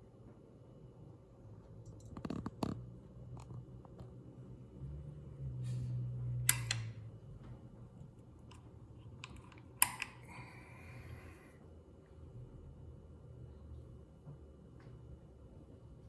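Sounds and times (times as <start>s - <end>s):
low steady buzz: 3.0s - 16.0s
sharp click: 6.5s - 7.0s, 9.2s - 10.3s.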